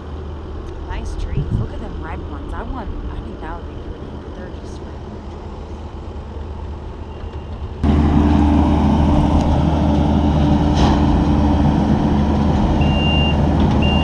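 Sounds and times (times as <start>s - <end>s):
heavy vehicle engine running: 0.0s - 14.0s
reversing alarm beeping: 12.8s - 14.0s.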